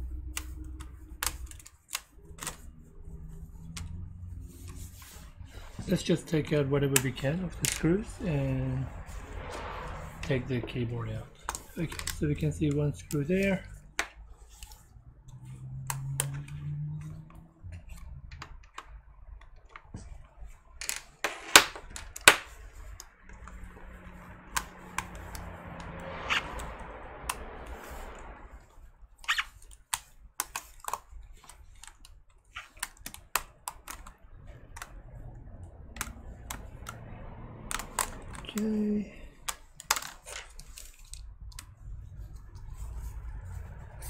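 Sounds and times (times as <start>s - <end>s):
soft rustle: 0.0s - 18.3s, 22.5s - 44.0s
screwdriver and plastic parts clicking: 0.3s - 2.7s, 11.4s - 14.8s, 29.2s - 35.0s, 35.9s - 37.1s, 37.7s - 38.7s, 39.3s - 41.8s.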